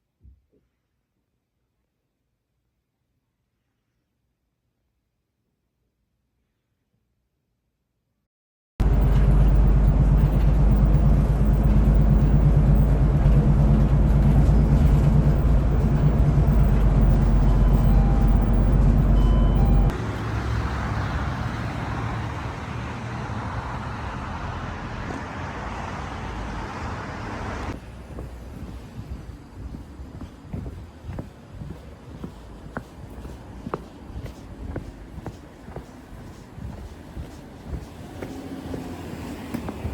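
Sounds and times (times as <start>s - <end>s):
vehicle engine rumble: 8.8s - 39.9s
traffic hiss: 20.0s - 39.9s.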